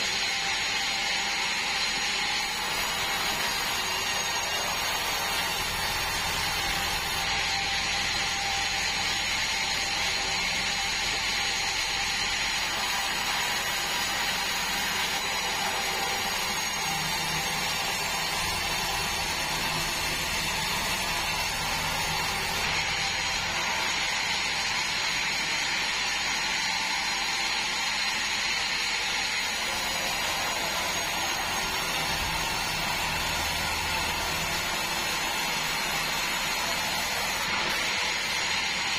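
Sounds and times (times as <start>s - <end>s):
band sawmill running: 0.0s - 38.9s.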